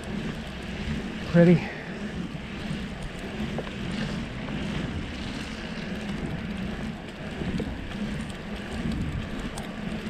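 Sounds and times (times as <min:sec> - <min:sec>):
bicycle tyres rolling over snow: 0:00.0 - 0:10.0
faint ticks: 0:02.5 - 0:10.0.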